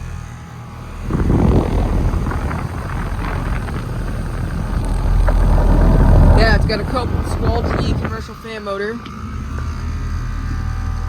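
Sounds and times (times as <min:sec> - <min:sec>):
compressor low hum: 0:00.0 - 0:11.0
fan rushing air noise: 0:00.0 - 0:11.0.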